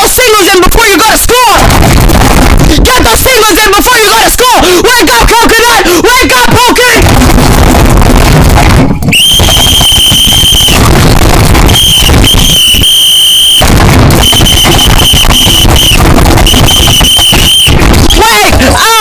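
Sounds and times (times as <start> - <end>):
rough crackling noise: 1.6 - 3.3, 6.8 - 19.0
piercing high-pitched tone: 9.1 - 19.0.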